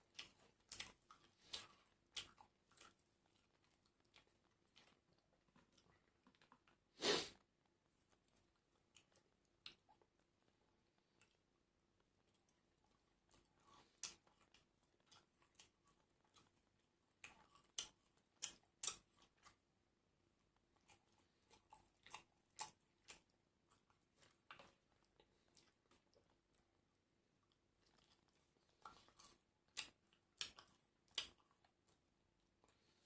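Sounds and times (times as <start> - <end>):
person chewing and biting food: 0.1 - 7.3, 12.2 - 19.6, 20.6 - 26.6, 27.4 - 32.0.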